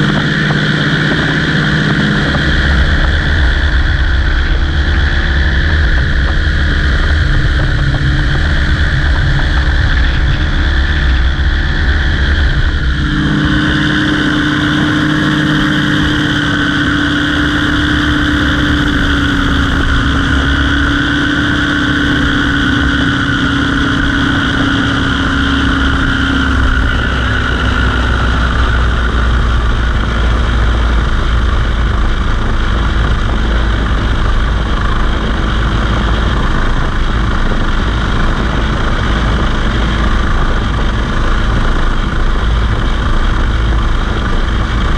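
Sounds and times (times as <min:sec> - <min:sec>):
propeller aircraft engine running: 0:00.0 - 0:44.9.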